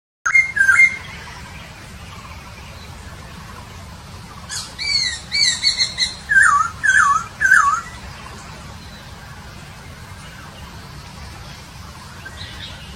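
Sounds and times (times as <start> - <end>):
songbird whistling: 0.3 - 1.4, 4.5 - 8.0.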